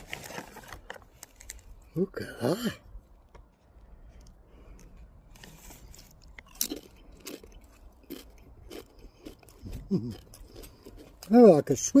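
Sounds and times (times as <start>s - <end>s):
person chewing crisps: 0.0s - 1.9s, 3.6s - 11.7s.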